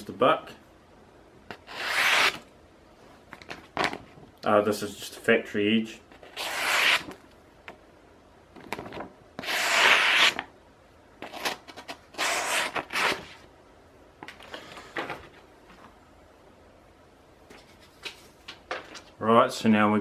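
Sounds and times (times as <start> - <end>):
knife slicing paper: 1.6 - 2.5, 6.2 - 7.2, 9.4 - 10.4, 11.3 - 13.4.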